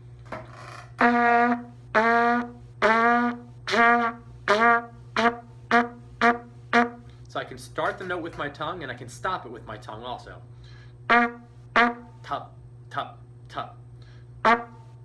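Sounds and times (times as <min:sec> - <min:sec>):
trumpet playing low notes: 0:01.0 - 0:07.2, 0:11.1 - 0:12.3, 0:14.4 - 0:15.0.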